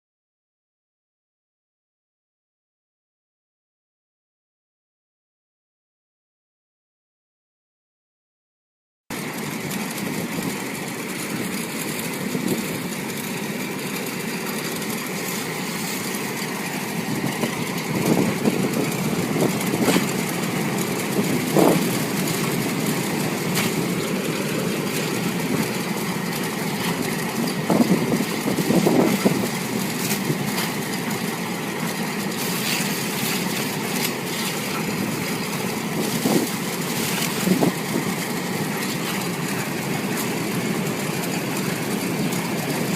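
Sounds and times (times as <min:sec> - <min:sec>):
washing machine churning: 0:09.1 - 0:42.9.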